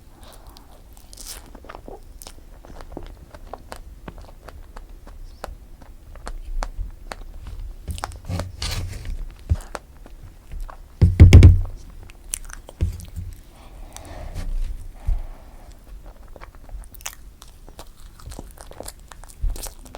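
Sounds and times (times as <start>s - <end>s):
chewing and biting: 0.2s - 8.3s, 15.2s - 19.9s
deep thump: 11.0s - 11.8s, 12.8s - 13.4s.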